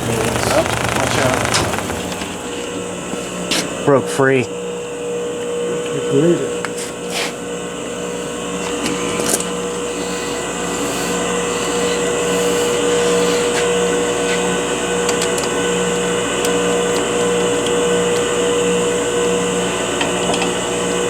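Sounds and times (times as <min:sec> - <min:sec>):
blade hissing against tape: 0:00.0 - 0:02.6
lathe motor humming: 0:00.0 - 0:03.0.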